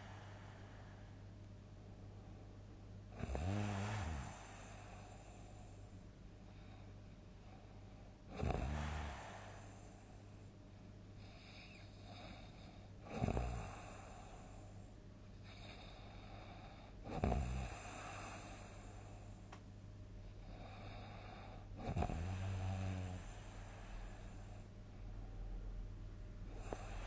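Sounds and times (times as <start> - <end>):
quiet breathing: 0.0 - 19.6, 20.2 - 25.8, 26.4 - 27.0
person snoring loudly: 3.2 - 5.1, 8.3 - 9.8, 13.1 - 14.0, 17.1 - 18.5, 21.8 - 23.4.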